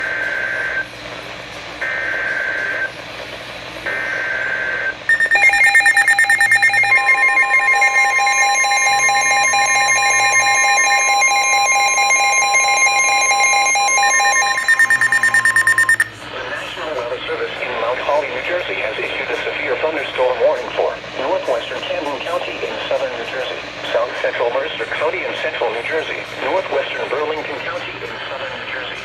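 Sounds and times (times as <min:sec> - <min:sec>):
steady high warning tone: 0:03.9 - 0:16.2
pulsing electronic alarm beep: 0:05.1 - 0:16.1
screeching data tones: 0:05.1 - 0:16.1.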